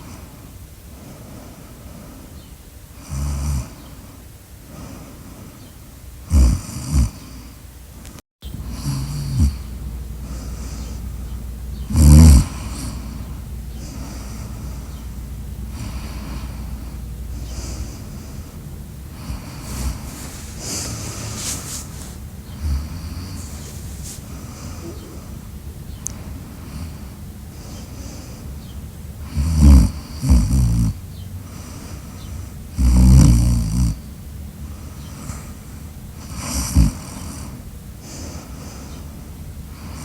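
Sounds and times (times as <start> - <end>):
person snoring: 3.0 - 3.8, 6.3 - 7.4, 8.6 - 11.1, 11.9 - 15.1, 15.7 - 25.4, 29.2 - 31.0, 32.8 - 34.0, 36.3 - 37.5.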